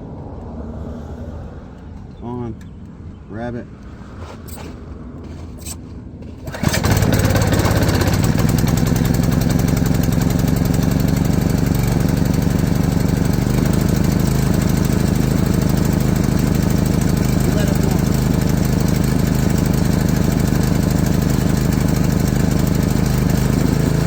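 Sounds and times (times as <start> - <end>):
small gasoline engine running: 6.4 - 24.0.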